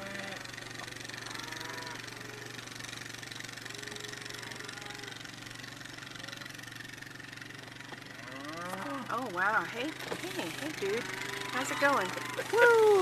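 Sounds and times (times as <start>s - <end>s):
vehicle engine idling: 0.0s - 13.0s
faint cattle lowing: 8.2s - 9.2s.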